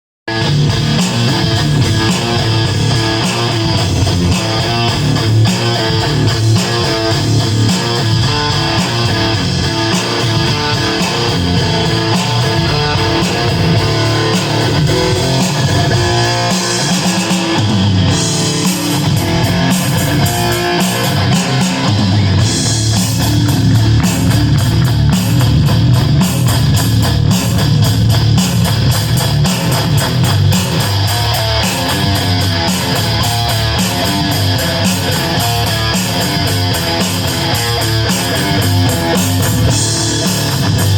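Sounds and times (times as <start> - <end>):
distorted electric guitar: 0.3 - 40.9.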